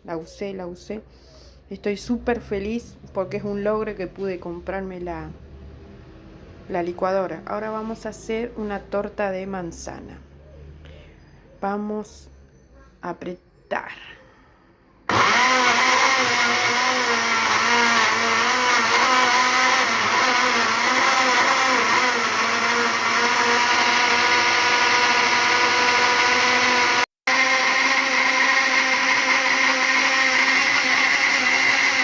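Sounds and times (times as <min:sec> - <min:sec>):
blender motor running: 0:15.1 - 0:32.0.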